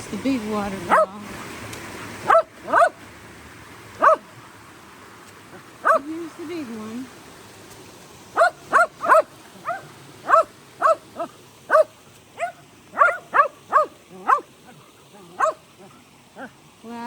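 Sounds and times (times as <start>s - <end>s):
dog barking: 0.9s - 1.1s, 2.2s - 3.0s, 4.0s - 4.3s, 5.8s - 6.1s, 8.4s - 14.5s, 15.2s - 15.9s.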